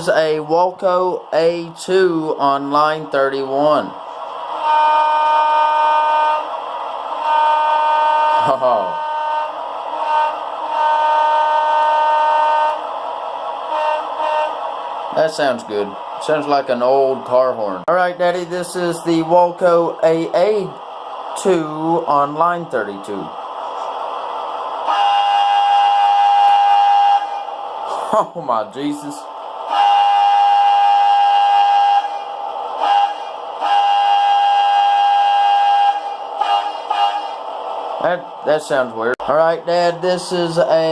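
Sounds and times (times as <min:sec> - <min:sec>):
locomotive air horn through small speaker: 0:04.6 - 0:06.5, 0:07.2 - 0:12.8, 0:13.7 - 0:14.6, 0:24.9 - 0:27.5, 0:29.7 - 0:37.4.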